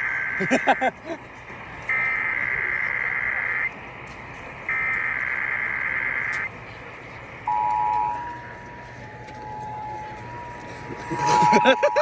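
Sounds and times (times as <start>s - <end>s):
two-tone attention signal: 11.1s - 12.0s.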